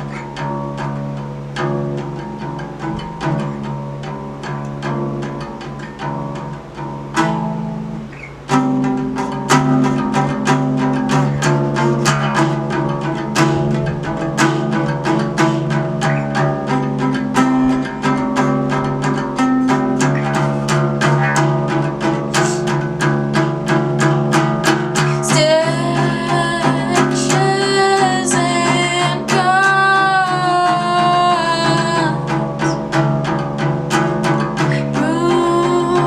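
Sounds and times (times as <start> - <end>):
higher melody line: 0.0 - 36.0
sustained low string notes: 0.0 - 36.0.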